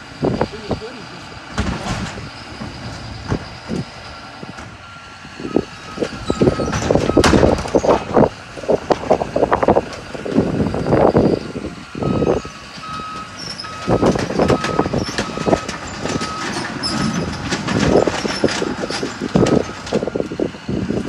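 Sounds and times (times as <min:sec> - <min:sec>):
building demolition crashes: 0:01.5 - 0:03.8, 0:06.0 - 0:10.5, 0:13.6 - 0:20.2
machine backup alarm beeping: 0:04.2 - 0:07.4, 0:12.0 - 0:17.0, 0:19.4 - 0:19.9.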